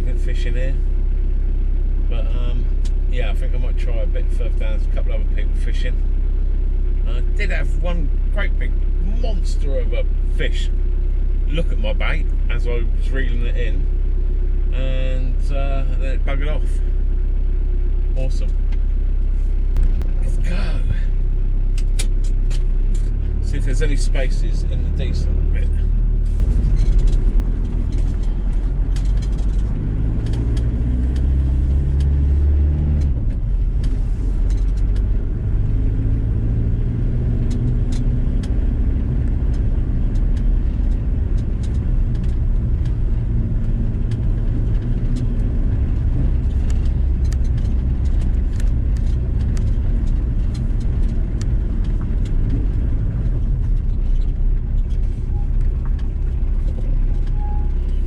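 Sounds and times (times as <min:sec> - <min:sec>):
van engine and road noise: 0:00.0 - 0:58.0.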